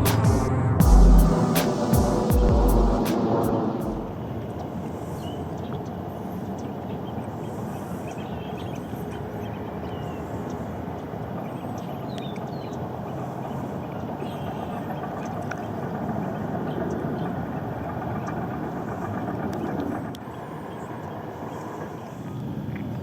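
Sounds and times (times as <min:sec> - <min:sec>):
low outdoor rumble: 0:00.0 - 0:04.6.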